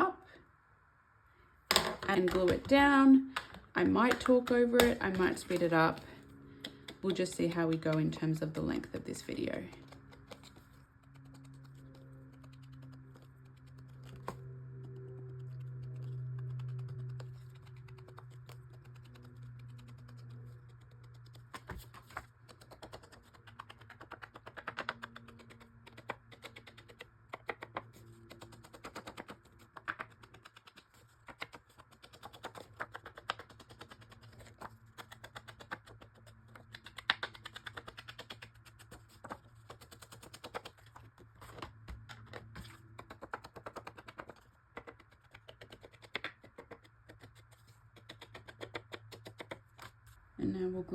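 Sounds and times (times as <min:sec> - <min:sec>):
low steady hum: 0:00.0 - 0:50.9
ink pad tapping on paper: 0:01.7 - 0:06.0, 0:06.6 - 0:10.6, 0:21.0 - 0:40.8.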